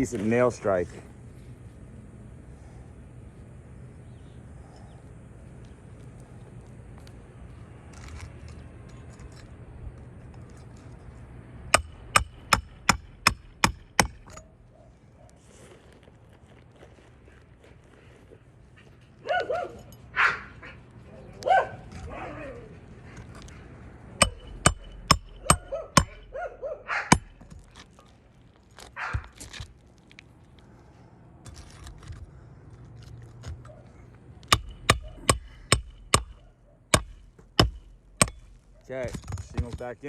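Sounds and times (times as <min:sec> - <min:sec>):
hammer striking metal: 0:11.7 - 0:14.4, 0:24.2 - 0:26.3, 0:34.5 - 0:38.6
dog barking: 0:19.2 - 0:20.8, 0:21.4 - 0:22.4, 0:25.5 - 0:27.2.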